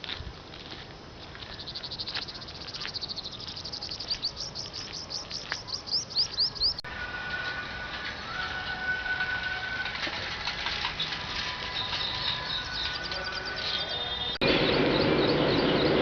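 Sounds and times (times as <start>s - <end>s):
songbird singing: 1.1s - 8.5s, 10.9s - 16.0s.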